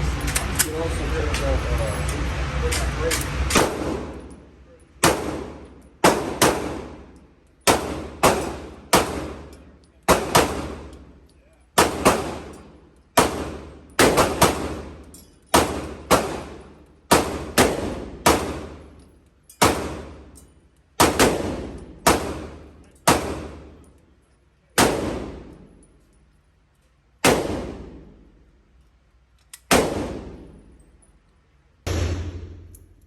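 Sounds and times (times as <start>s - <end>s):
gunshots with echo: 5.0s - 7.1s, 31.9s - 32.9s.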